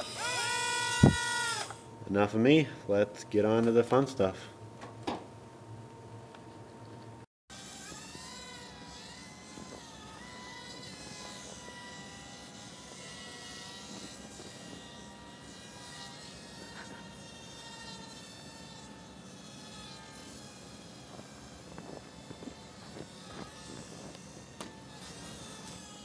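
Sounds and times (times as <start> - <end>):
small electric motor buzzing: 0.0 - 2.0, 7.5 - 26.0.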